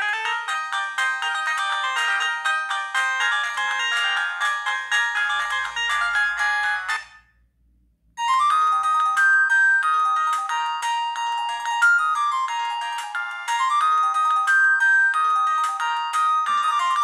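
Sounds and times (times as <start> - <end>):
mobile phone ringtones: 8.2 - 17.0.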